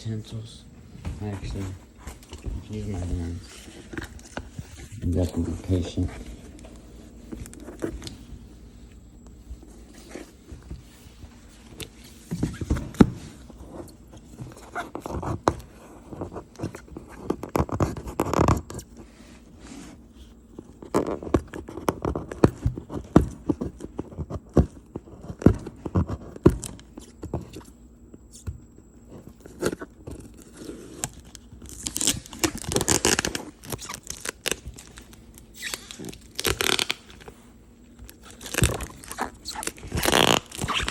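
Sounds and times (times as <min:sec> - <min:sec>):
cardboard and tape tearing: 0:29.5 - 0:37.4, 0:38.1 - 0:40.9.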